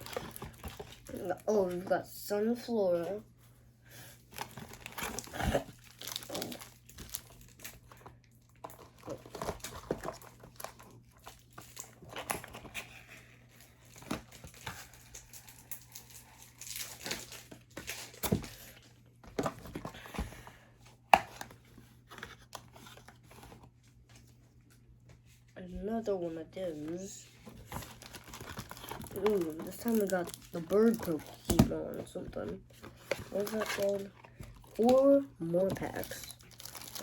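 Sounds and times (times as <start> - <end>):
plastic wrap crinkling: 0.0 - 1.9, 4.3 - 12.9, 13.6 - 18.5, 27.4 - 37.0.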